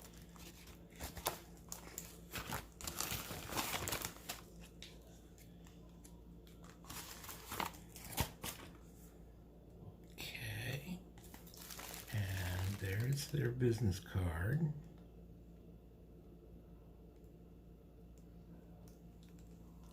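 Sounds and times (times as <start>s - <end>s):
packaging crinkling and tearing: 0.0s - 8.8s, 11.2s - 13.4s.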